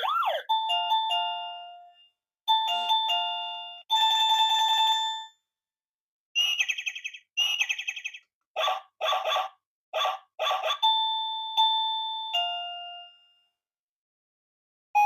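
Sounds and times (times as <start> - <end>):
electronic doorbell chime: 0.0 - 5.5, 10.8 - 13.6.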